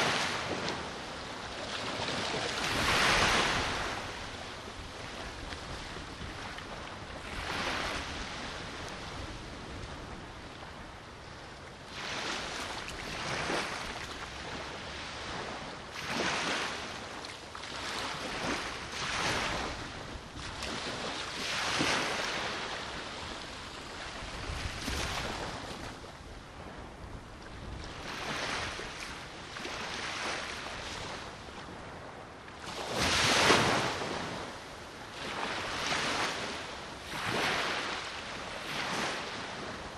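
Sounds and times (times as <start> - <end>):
small waves breaking on shore: 0.0 - 39.9
wind buffeting microphone: 2.1 - 11.7, 18.4 - 34.5.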